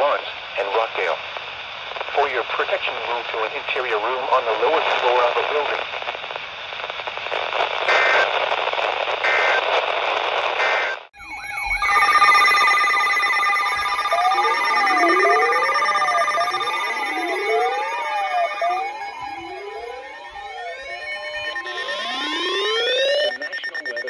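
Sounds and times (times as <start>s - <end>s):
radio hiss: 0.0s - 11.1s, 21.5s - 24.0s
electronic alarm tones: 10.7s - 24.0s.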